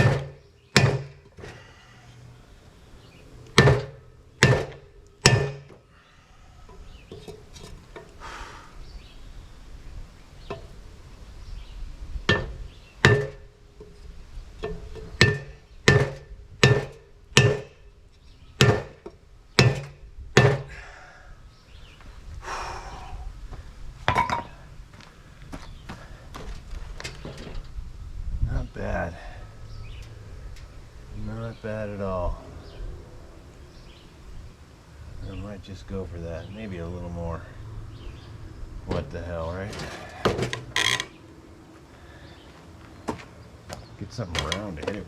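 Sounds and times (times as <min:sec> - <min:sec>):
hammer striking steel tube: 0:03.6 - 0:05.7, 0:12.3 - 0:13.4, 0:14.6 - 0:17.8.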